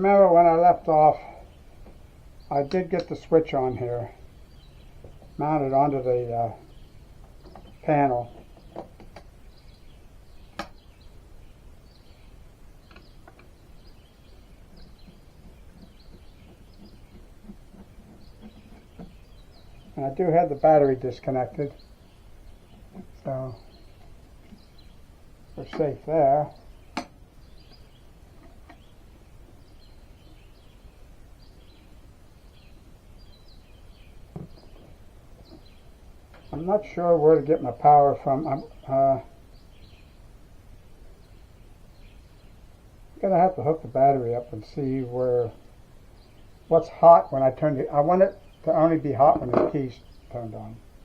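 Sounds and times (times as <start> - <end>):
faint bird chirps: 0.0 - 40.4
low background noise: 0.0 - 51.0
soft knocks: 34.3 - 35.6.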